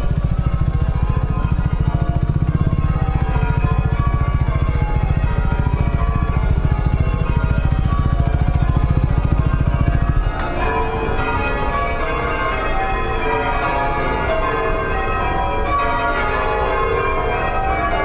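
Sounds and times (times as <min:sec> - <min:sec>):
low steady rumble: 0:00.0 - 0:11.2
church bells change-ringing: 0:00.0 - 0:18.0.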